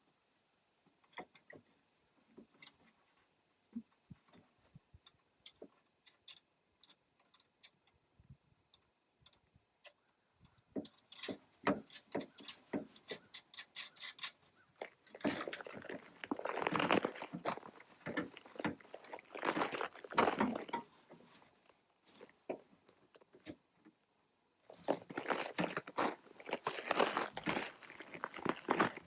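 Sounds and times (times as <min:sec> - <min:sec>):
rattling and scraping: 0:11.2 - 0:22.3, 0:24.7 - 0:29.0.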